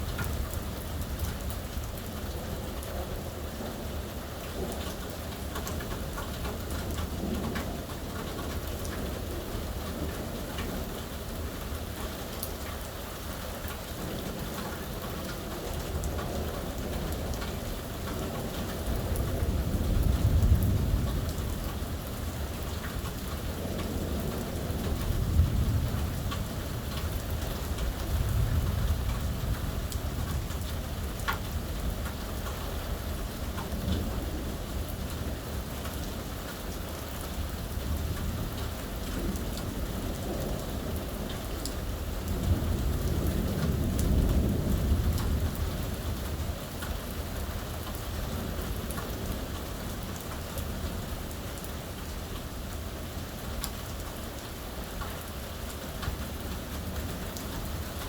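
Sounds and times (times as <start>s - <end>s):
heavy rain falling: 0.0s - 58.0s
thunder rumbling: 18.2s - 35.7s, 37.4s - 47.2s.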